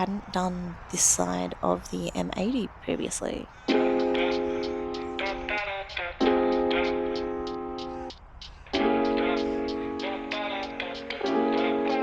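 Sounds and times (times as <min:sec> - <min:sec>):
sustained keyboard chord: 0:03.7 - 0:08.1, 0:08.8 - 0:12.0
light percussion beat: 0:03.7 - 0:12.0.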